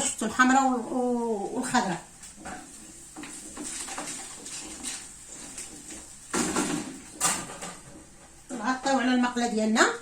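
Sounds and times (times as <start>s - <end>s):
scraping and rustling: 1.6s - 8.4s
utensils and pan clattering: 2.4s - 8.1s.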